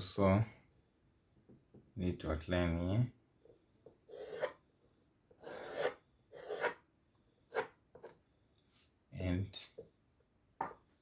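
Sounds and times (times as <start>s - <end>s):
pencil drawing on paper: 4.1s - 4.6s, 5.4s - 6.8s.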